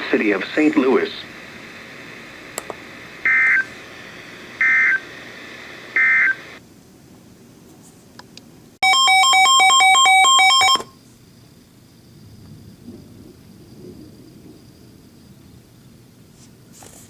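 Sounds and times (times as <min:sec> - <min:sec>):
radio hiss: 0:00.0 - 0:06.6.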